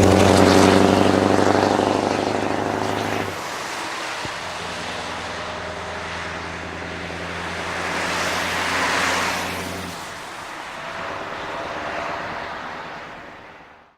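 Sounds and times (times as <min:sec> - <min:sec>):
low engine hum: 0:00.0 - 0:10.0
vehicle road noise passing: 0:00.0 - 0:13.9.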